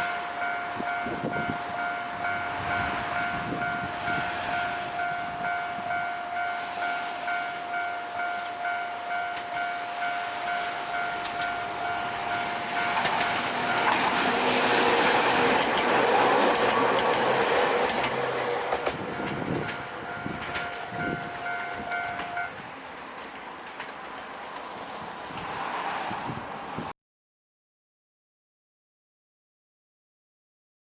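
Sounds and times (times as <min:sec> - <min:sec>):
level-crossing warning bell ringing: 0:00.0 - 0:22.6
electric train passing: 0:00.0 - 0:26.9
wheel clacks over rail joints: 0:11.1 - 0:24.8.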